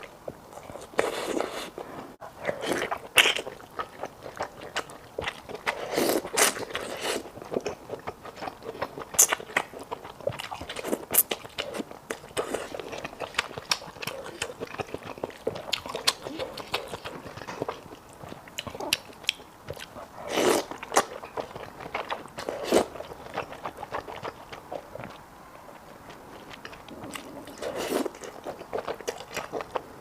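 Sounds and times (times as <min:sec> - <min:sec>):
chewing and crunching: 0:00.0 - 0:30.0.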